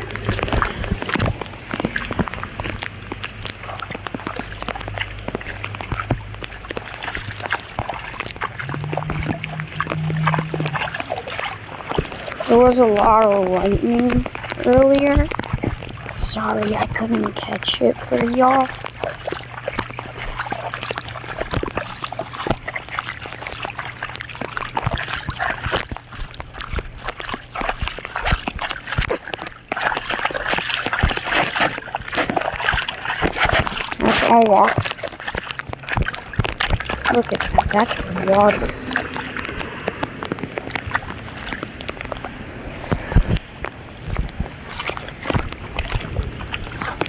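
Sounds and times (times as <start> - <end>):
low steady hum: 0.0 - 47.0
shallow water splashing: 0.0 - 47.0
higher steady hum: 8.2 - 20.1.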